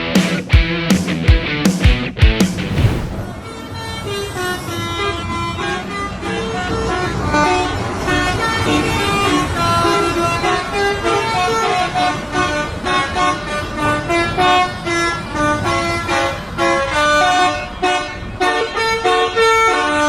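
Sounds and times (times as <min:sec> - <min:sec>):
low rumble: 0:02.5 - 0:03.4
truck air horns playing tune: 0:04.0 - 0:20.0.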